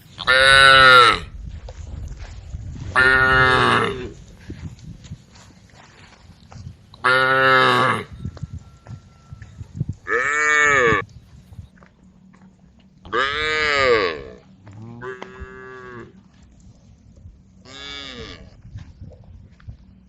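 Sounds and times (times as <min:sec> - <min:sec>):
cows mooing: 0:00.2 - 0:01.3, 0:03.0 - 0:04.2, 0:07.0 - 0:08.2, 0:10.0 - 0:11.1, 0:13.0 - 0:16.3, 0:17.6 - 0:18.5.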